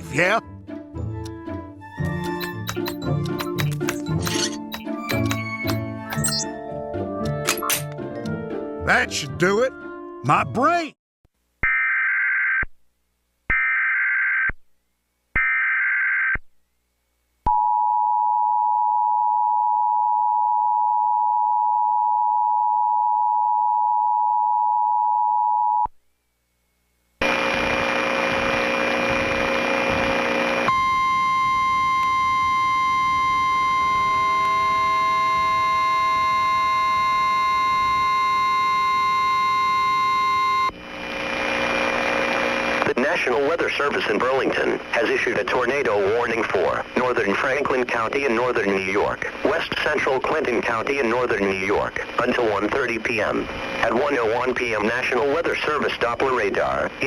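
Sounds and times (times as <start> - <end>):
high steady tone: 2.2 - 6.5, 30.7 - 40.7
two-tone attention signal: 2.2 - 6.5, 30.7 - 40.7
digital header data bursts: 2.3 - 6.4
harsh noisy buzz: 27.2 - 42.9.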